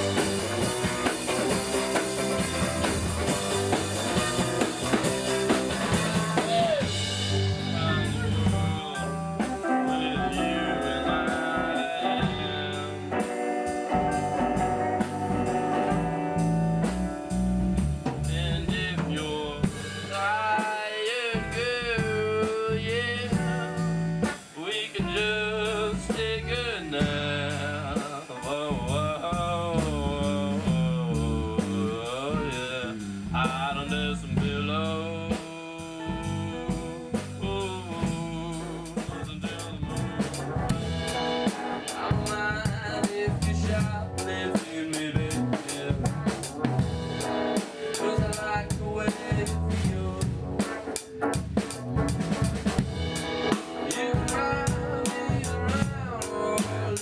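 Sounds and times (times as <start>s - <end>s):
drum kit snare hits: 0.0s - 10.5s, 37.2s - 57.0s
rock band music: 0.0s - 57.0s.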